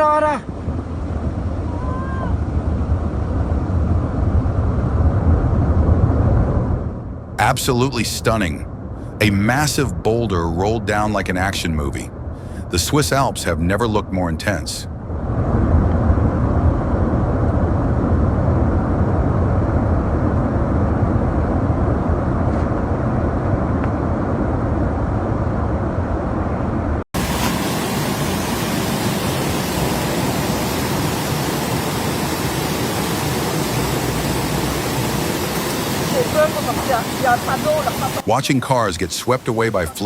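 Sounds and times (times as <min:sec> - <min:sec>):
loud low rushing noise: 0:02.4 - 0:12.8, 0:14.5 - 0:39.8
bright rushing hiss: 0:27.2 - 0:38.2.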